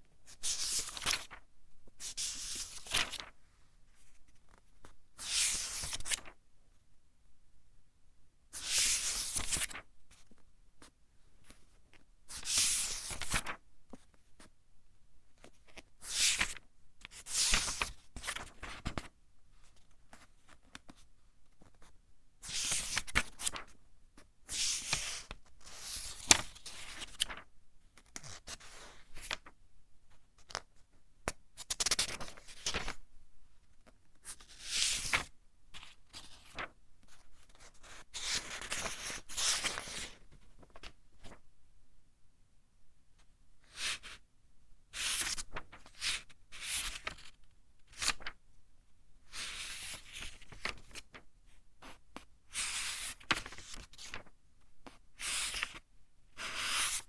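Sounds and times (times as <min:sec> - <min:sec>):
book pages turning: 0:02.1 - 0:03.3, 0:22.6 - 0:23.7, 0:25.9 - 0:27.4, 0:48.0 - 0:48.3.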